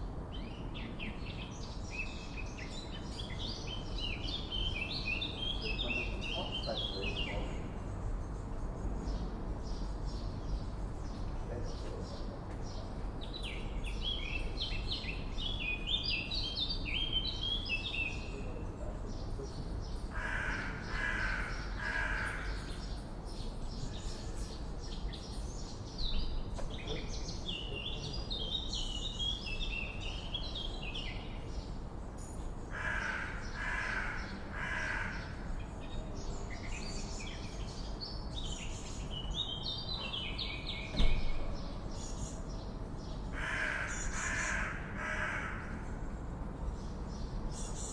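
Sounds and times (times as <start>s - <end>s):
crow cawing: 20.2s - 22.7s, 32.7s - 35.5s, 43.4s - 45.8s
short thump: 40.9s - 41.5s.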